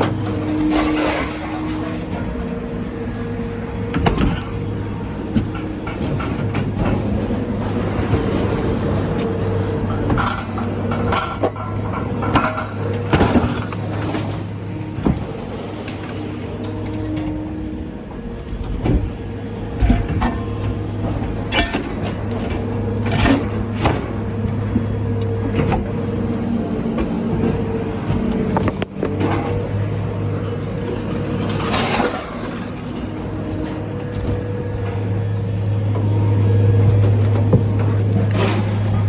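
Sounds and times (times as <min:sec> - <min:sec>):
engine running: 0:00.0 - 0:39.0
scrap metal clanking: 0:19.8 - 0:24.2.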